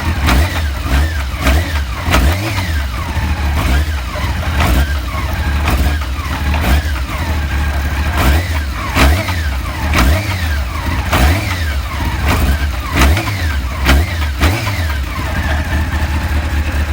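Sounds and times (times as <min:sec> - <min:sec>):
car engine running: 0:00.0 - 0:16.9.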